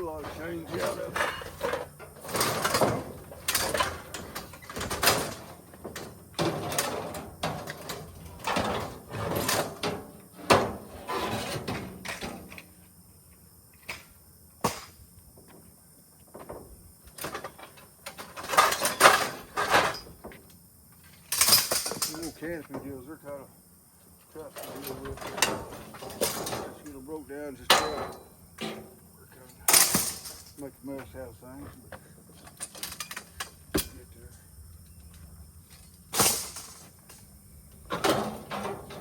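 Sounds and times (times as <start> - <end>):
sheet metal clanking and rattling: 0.0 - 12.5, 17.2 - 20.3, 24.4 - 27.0, 27.6 - 29.0, 37.8 - 39.0.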